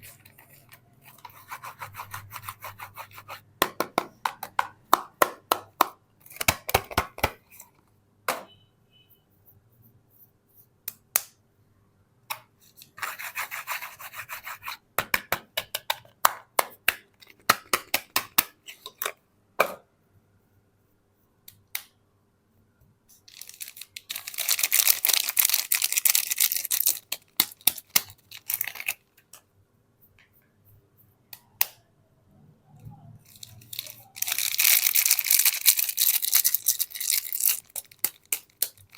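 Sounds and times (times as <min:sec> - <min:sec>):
soap wrapping crackling: 0:23.3 - 0:29.1, 0:33.3 - 0:38.9.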